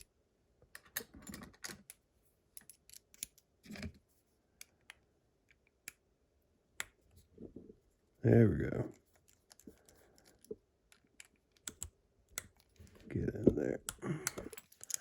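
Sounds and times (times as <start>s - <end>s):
metal clicks of lock picking: 13.9s - 15.0s.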